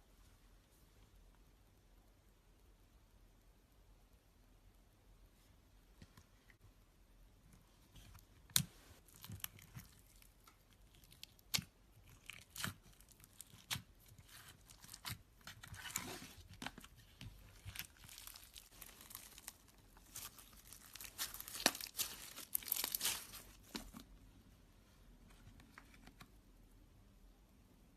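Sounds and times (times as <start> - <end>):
slime squeezed and stretched by hand: 17.6 - 23.8.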